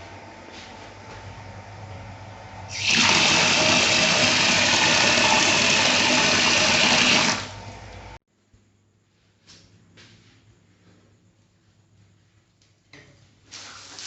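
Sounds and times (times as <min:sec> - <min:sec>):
shower water running hard: 0:02.7 - 0:07.7.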